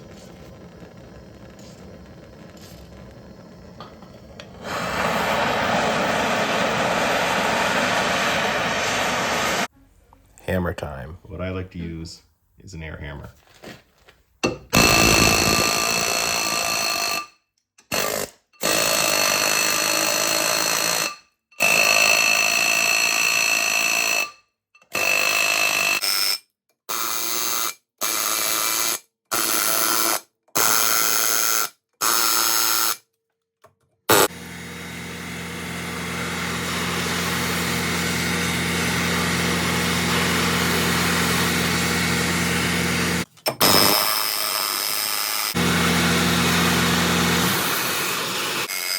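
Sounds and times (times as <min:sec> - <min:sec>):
air hammer on metal: 0:14.5 - 0:17.2.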